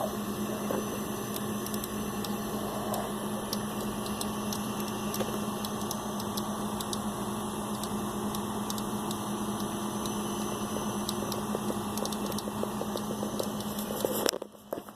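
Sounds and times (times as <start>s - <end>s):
computer humming and whirring: 0.0s - 14.9s
sharp clicks from computer: 1.3s - 2.4s, 3.5s - 7.0s, 7.7s - 10.2s, 11.0s - 13.7s.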